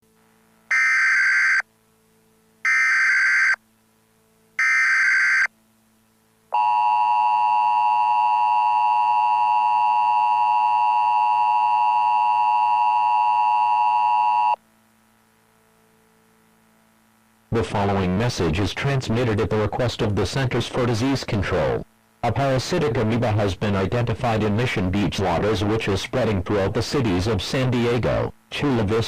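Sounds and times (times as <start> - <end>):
screeching data tones: 0.7 - 1.6, 2.6 - 3.6, 4.6 - 5.5.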